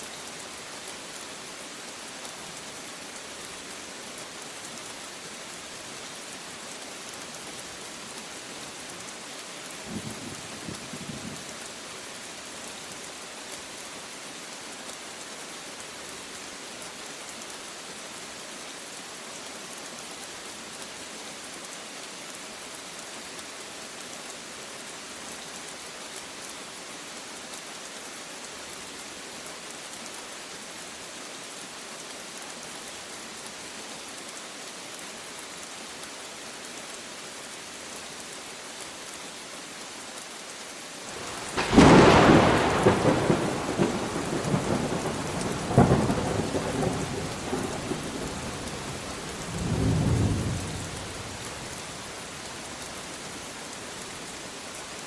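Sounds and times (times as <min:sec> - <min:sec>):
steady rain falling: 0:00.0 - 0:55.0
thunder crack and rumbling: 0:41.4 - 0:48.2.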